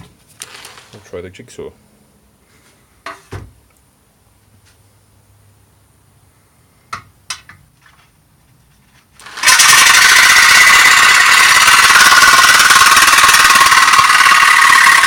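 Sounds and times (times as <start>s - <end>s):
jigsaw cutting sheet steel: 9.2s - 15.0s.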